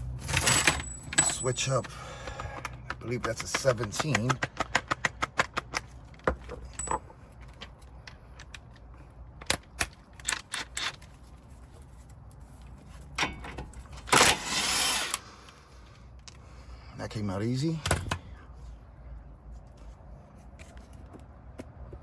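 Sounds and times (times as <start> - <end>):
metallic clinks of wrench and parts: 0.3 - 4.2, 6.4 - 8.8, 13.1 - 14.1.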